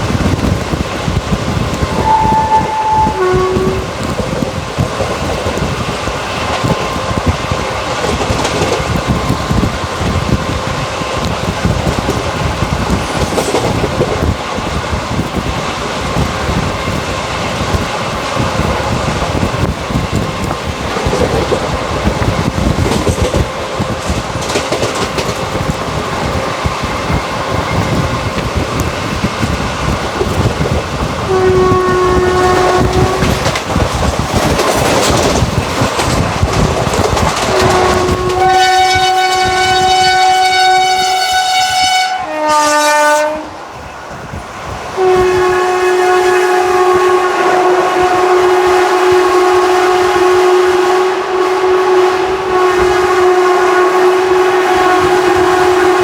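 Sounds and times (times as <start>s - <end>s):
train running at speed: 0.0s - 56.0s
locomotive horn blasts: 1.9s - 4.5s, 31.2s - 33.4s, 37.5s - 43.6s, 45.0s - 56.0s.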